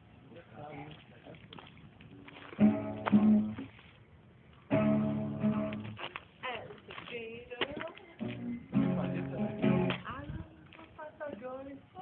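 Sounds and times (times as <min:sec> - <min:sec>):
acoustic guitar strumming: 0:02.6 - 0:03.7, 0:04.7 - 0:06.0, 0:08.2 - 0:10.1.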